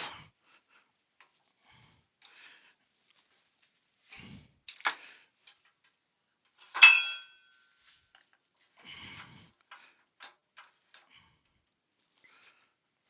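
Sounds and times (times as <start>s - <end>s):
metal tools clinking and knocking: 6.5s - 7.7s
loud ringing metal clank: 6.8s - 7.4s.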